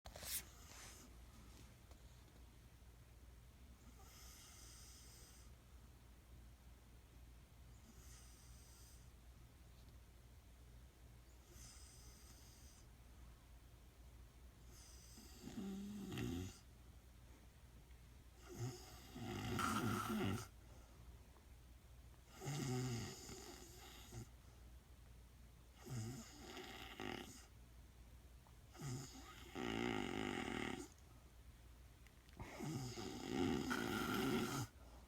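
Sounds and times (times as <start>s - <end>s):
woman snoring: 14.8s - 16.6s, 18.5s - 20.5s, 22.3s - 24.3s, 25.8s - 27.5s, 28.8s - 31.0s, 32.4s - 34.8s.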